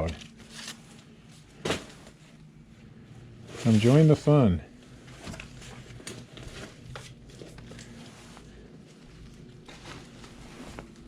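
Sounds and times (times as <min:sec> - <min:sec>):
papers rustling: 0:05.1 - 0:11.0.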